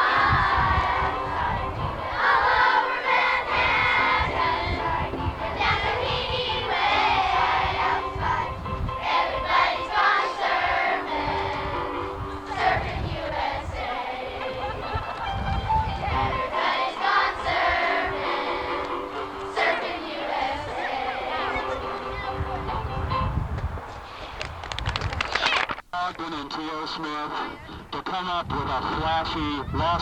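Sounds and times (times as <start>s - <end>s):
children singing: 0.0s - 14.8s, 16.0s - 22.4s
musical accompaniment: 0.0s - 23.4s.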